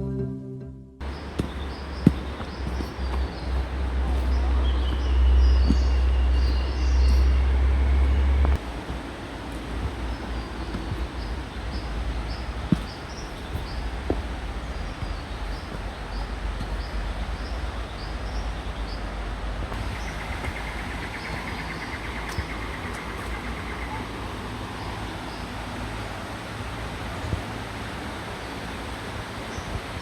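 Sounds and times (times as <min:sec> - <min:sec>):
sharp knocks: 0:01.0 - 0:17.6
creek rushing: 0:01.0 - 0:30.0.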